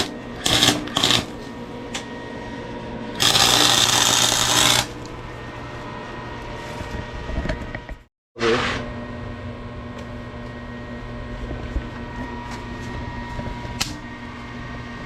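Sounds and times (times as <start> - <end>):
welding arc crackling: 0.0 - 1.5, 3.2 - 5.1
steady motor hum: 0.0 - 15.0.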